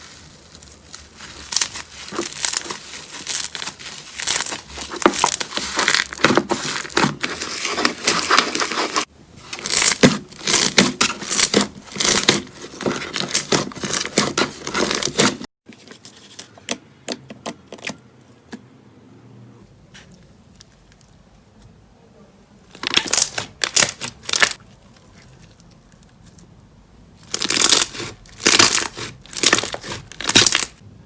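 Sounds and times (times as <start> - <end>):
slime crackling and popping: 0.0 - 8.8, 9.6 - 15.3, 22.7 - 25.5, 27.2 - 30.8.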